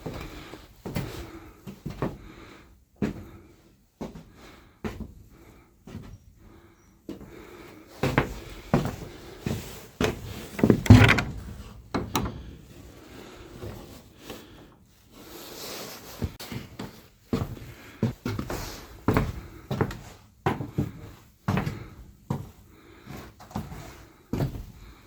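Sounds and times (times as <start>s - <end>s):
wooden knocks and bumps: 10.6s - 12.8s.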